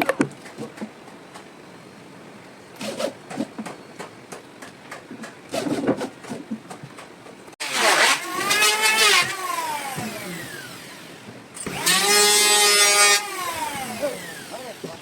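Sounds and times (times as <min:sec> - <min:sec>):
electric power tool motor: 0:07.6 - 0:15.0.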